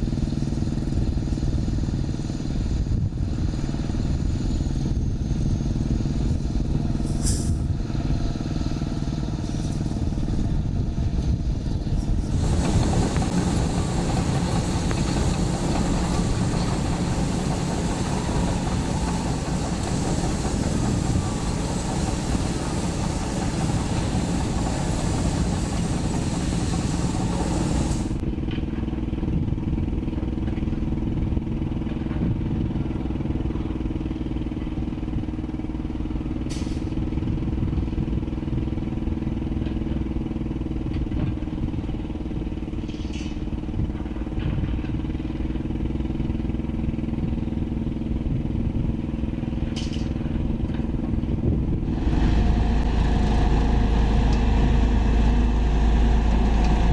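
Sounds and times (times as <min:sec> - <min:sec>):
diesel engines droning: 0:00.0 - 0:56.9
harsh rushing and rattling noise: 0:09.4 - 0:28.2.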